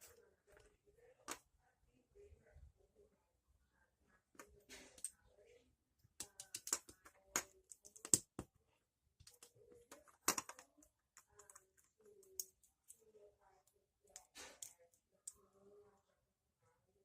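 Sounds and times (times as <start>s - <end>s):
small plastic parts clicking: 6.2s - 8.4s.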